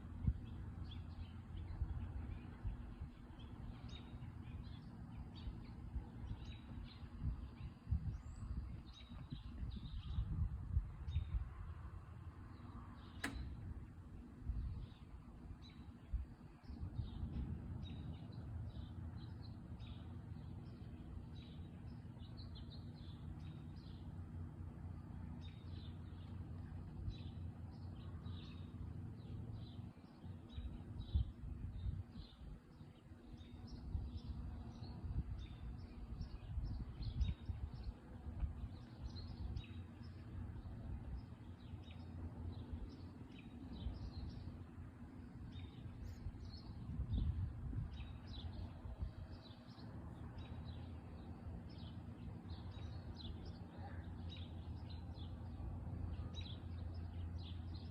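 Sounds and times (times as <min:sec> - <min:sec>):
low outdoor rumble: 0:00.0 - 0:57.9
small birds chirping: 0:00.0 - 0:57.9
sharp click: 0:13.1 - 0:13.6.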